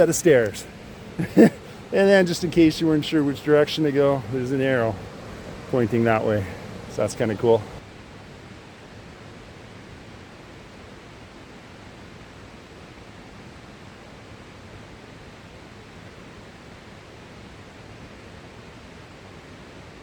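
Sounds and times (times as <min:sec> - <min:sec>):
creek rushing: 0:00.0 - 0:07.9.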